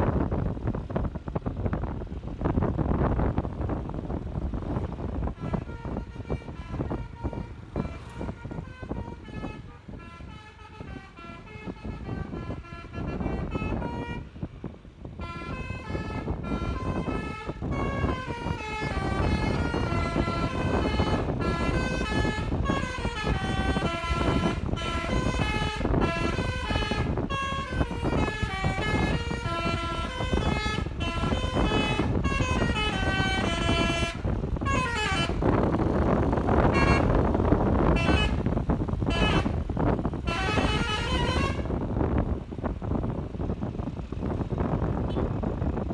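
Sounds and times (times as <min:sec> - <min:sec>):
bus engine and road noise: 0:00.0 - 0:45.9
multi-tone air horn melodies: 0:04.8 - 0:14.5, 0:15.1 - 0:41.8.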